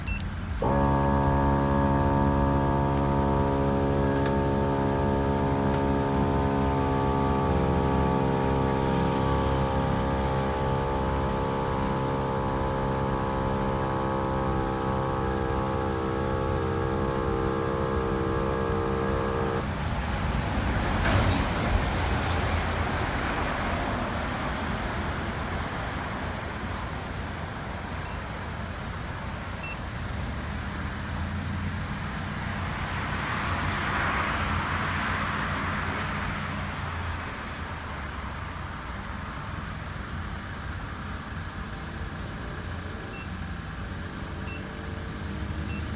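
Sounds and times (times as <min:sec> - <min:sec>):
road traffic with engine rumble: 0:00.0 - 0:45.9
held musical chord: 0:00.6 - 0:19.6.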